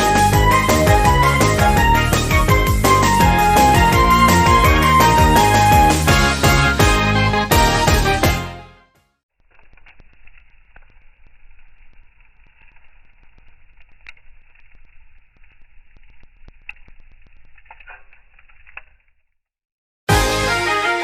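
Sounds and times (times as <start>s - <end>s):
sharp snaps of fire: 9.5s - 19.0s
campfire crackling: 9.5s - 19.1s.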